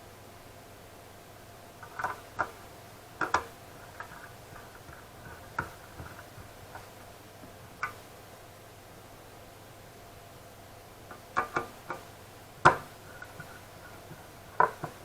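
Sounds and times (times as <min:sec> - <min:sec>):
small hard parts clicking: 0:01.8 - 0:02.6, 0:03.2 - 0:08.0, 0:11.1 - 0:15.0.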